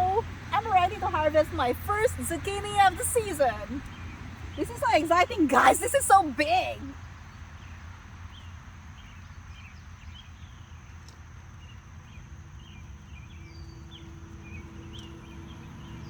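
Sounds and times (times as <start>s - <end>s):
steady low rumble: 12.0s - 16.0s.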